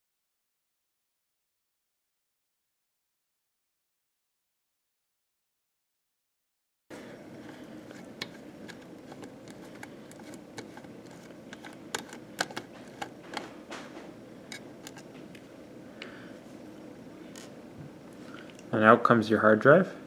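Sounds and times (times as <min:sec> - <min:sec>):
steady low hum: 0:06.9 - 0:20.0.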